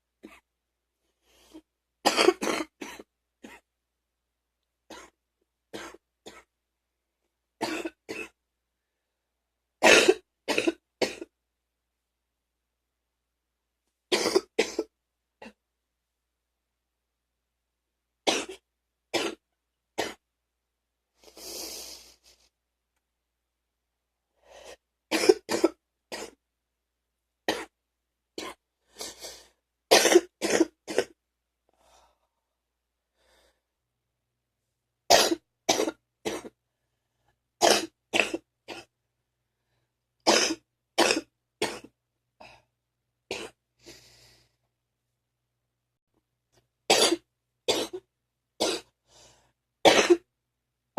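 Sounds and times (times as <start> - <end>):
person hacking cough: 2.1 - 3.6, 9.8 - 11.3, 25.1 - 26.4, 49.9 - 50.3
drawn breath: 21.2 - 22.5, 33.1 - 33.7, 43.8 - 44.7, 49.0 - 49.6.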